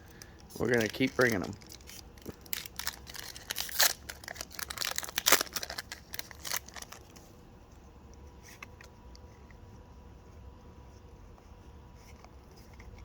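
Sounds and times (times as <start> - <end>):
foil pack tearing and crinkling: 0.6 - 7.1.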